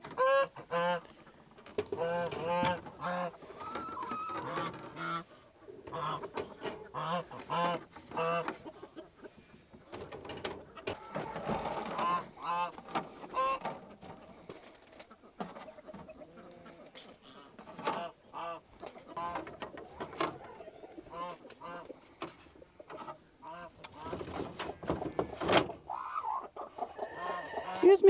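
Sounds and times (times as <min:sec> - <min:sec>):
goose honking: 0:00.1 - 0:01.1, 0:01.9 - 0:08.8, 0:10.8 - 0:13.7, 0:15.8 - 0:22.0, 0:23.0 - 0:25.2.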